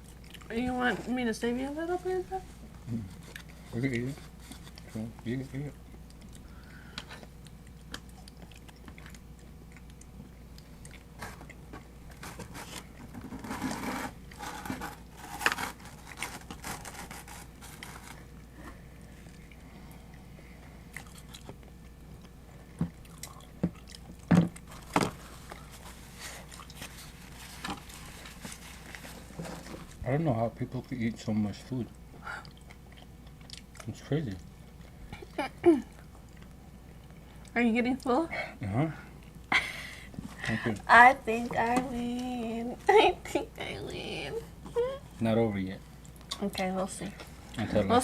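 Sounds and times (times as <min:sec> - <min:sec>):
pizza crust chewing: 0:02.8 - 0:30.0, 0:30.7 - 0:37.5.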